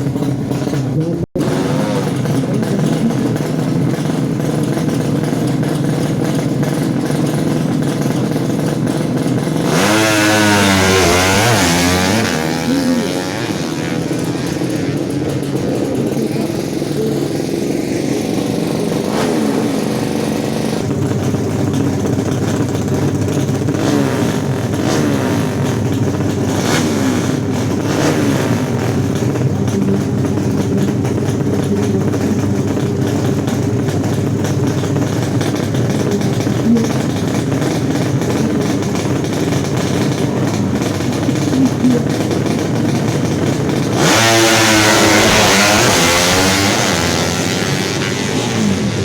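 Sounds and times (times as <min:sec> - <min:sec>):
motorcycles revving: 0:00.0 - 0:49.0.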